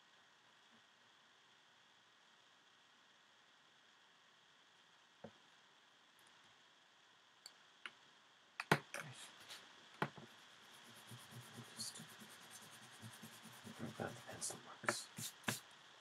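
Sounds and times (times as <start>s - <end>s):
pen scratching strokes: 10.6s - 15.6s.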